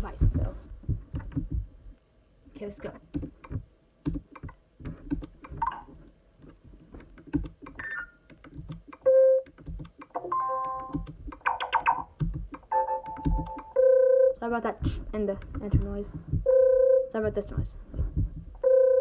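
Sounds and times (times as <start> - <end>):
braille keys clicking: 12.2 - 13.7.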